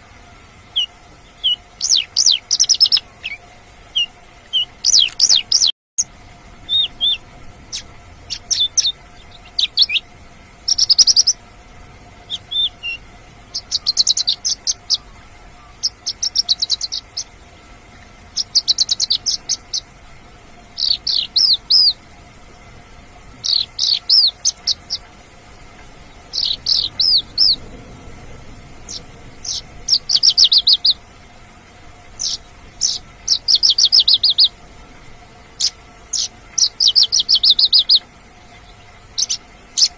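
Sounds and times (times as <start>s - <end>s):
faint steady hum: 0.0s - 39.9s
lark chirping and trilling: 0.7s - 5.7s, 6.6s - 10.0s, 10.6s - 11.4s, 12.3s - 17.3s, 18.3s - 19.9s, 20.8s - 22.0s, 23.4s - 25.1s, 26.0s - 27.6s, 28.8s - 31.0s, 32.1s - 34.6s, 35.6s - 38.1s, 39.2s - 39.9s.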